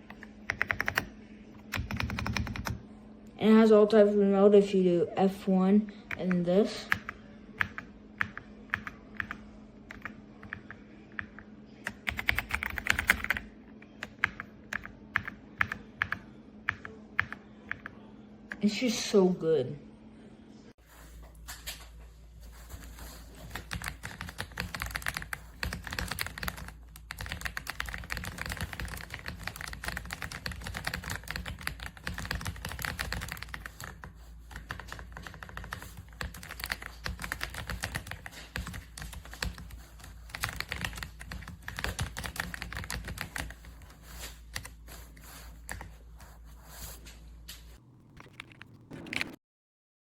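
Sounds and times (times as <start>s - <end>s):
typing on mechanical keyboard: 0.0s - 2.8s, 6.1s - 17.9s, 23.4s - 43.9s.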